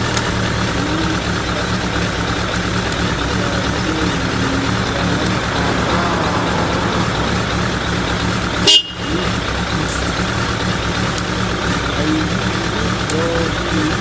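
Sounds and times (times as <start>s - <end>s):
motorcycle engine idling: 0.0s - 14.0s.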